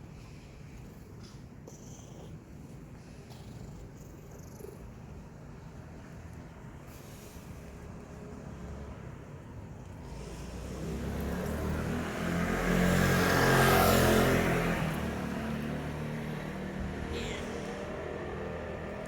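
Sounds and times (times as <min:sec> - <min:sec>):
vehicle passing by: 0:07.3 - 0:19.0.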